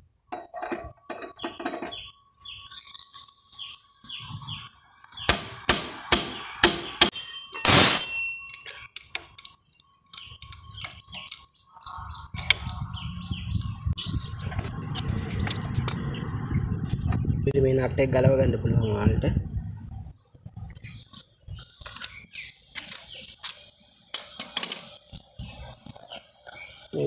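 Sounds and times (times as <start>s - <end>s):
sharp metallic knocks: 5.2s - 9.3s
metal tools clinking: 7.1s - 9.5s.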